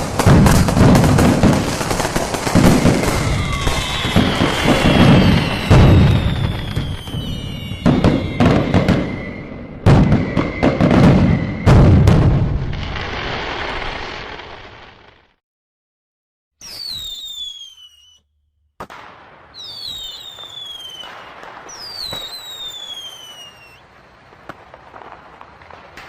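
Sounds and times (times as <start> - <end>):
rumbling firework burst: 0.0 - 15.3
firework pops and crackling: 0.0 - 15.4, 16.6 - 18.2, 18.8 - 26.0
whistling fireworks: 0.0 - 15.4, 16.6 - 26.0.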